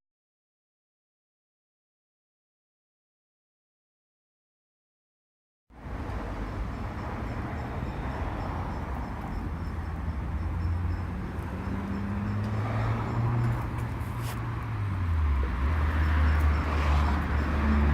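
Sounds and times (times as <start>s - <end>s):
outdoor background noise: 5.7s - 17.9s
vehicle engine humming: 5.8s - 17.9s.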